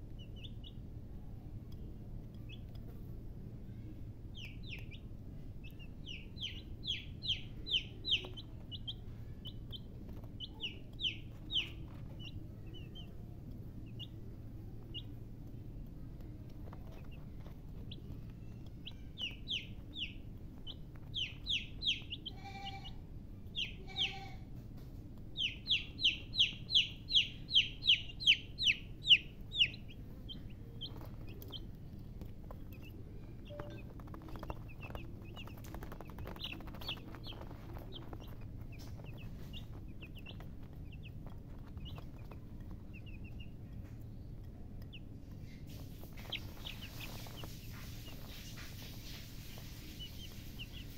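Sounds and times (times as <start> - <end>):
baby chicks peeping: 0.0 - 50.9
steady low background noise: 0.0 - 50.9
hen clucking: 5.8 - 13.2, 16.7 - 24.5, 25.4 - 43.6, 44.9 - 50.9.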